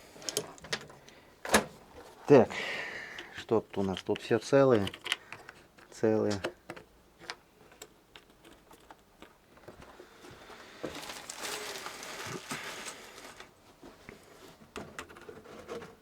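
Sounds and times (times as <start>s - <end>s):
scraping rustle: 10.3s - 16.0s.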